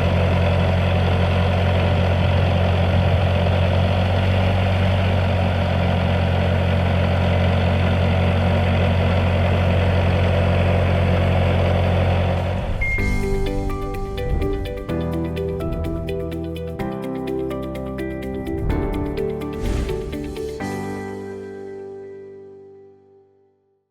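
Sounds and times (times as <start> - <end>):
diesel engine running steadily: 0.0 - 20.6
music: 12.7 - 23.7.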